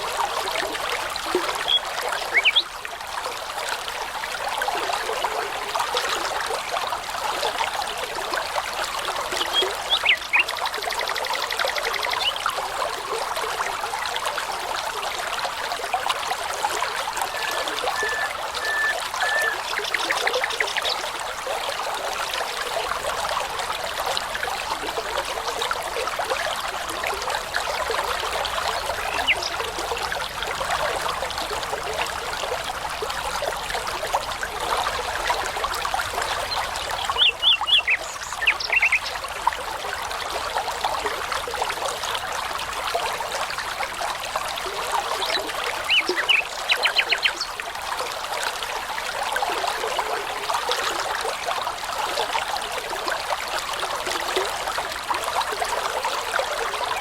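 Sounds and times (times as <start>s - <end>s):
babbling brook: 0.0s - 57.0s
songbird high notes: 17.1s - 21.0s.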